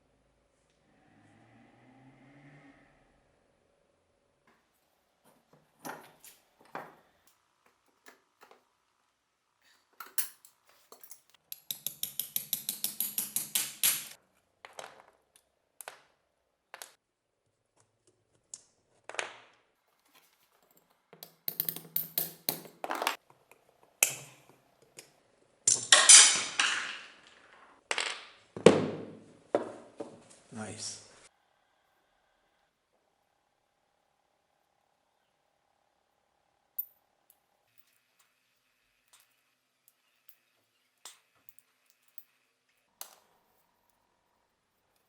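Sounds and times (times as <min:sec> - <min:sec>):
metallic clinks and clicks: 0:10.0 - 0:14.2, 0:21.2 - 0:22.7, 0:39.1 - 0:42.4.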